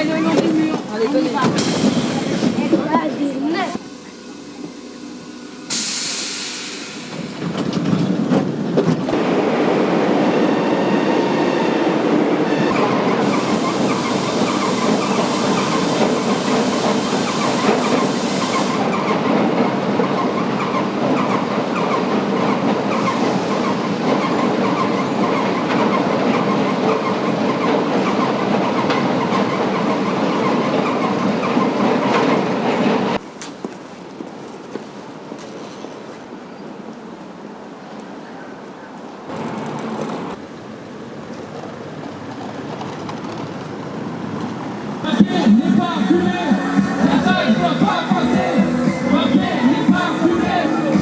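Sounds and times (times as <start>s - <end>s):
train wheels clattering on track: 0.0s - 3.8s, 5.7s - 36.1s, 39.3s - 51.0s
train hiss: 0.0s - 7.8s, 10.4s - 20.6s, 22.8s - 25.4s.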